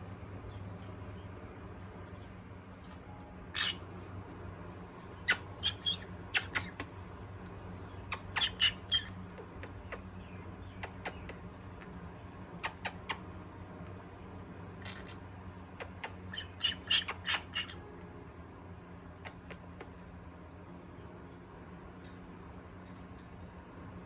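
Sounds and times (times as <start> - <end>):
parrot squawking: 3.5 - 3.9, 5.2 - 6.9, 8.1 - 10.0, 14.8 - 15.2, 15.8 - 17.8.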